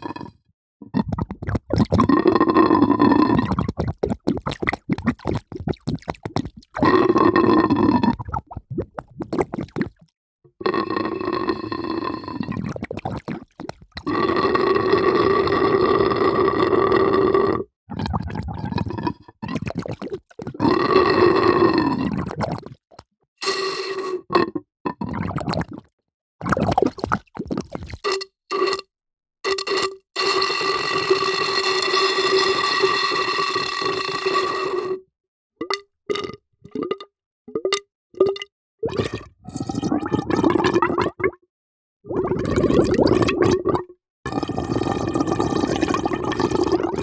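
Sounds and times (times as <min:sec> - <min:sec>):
water gurgling: 0:00.9 - 0:02.3, 0:03.0 - 0:10.0, 0:12.6 - 0:14.1, 0:17.9 - 0:20.7, 0:35.7 - 0:41.4, 0:42.1 - 0:47.0.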